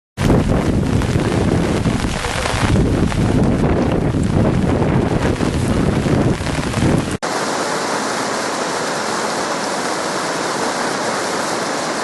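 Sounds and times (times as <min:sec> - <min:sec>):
wind buffeting microphone: 0:00.2 - 0:07.2
rushing floodwater: 0:00.2 - 0:12.0.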